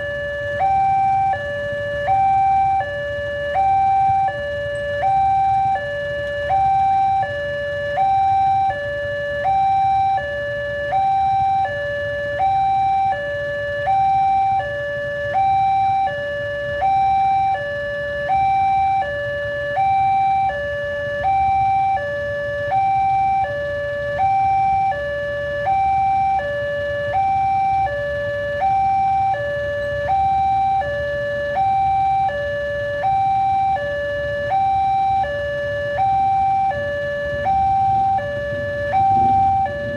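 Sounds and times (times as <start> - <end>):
two-tone crossing alarm: 0.0 - 39.9
low rumble: 38.5 - 39.9.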